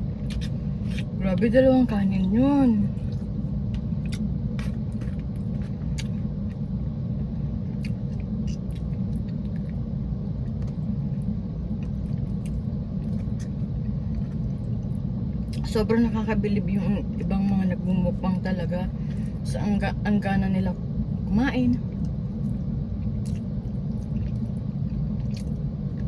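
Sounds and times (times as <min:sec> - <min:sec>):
chewing sounds: 0:00.2 - 0:01.2, 0:03.0 - 0:06.8, 0:07.6 - 0:15.6, 0:21.8 - 0:26.0.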